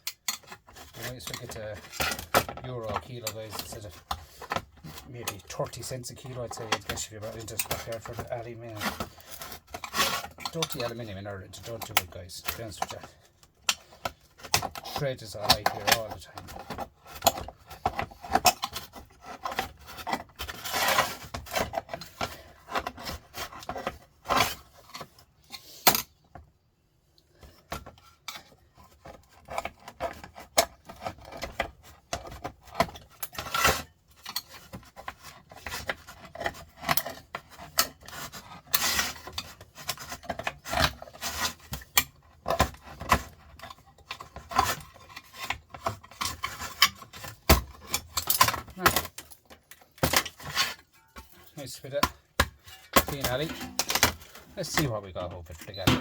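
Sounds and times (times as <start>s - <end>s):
metal scraping and clinking: 0.0s - 26.2s, 27.6s - 56.0s.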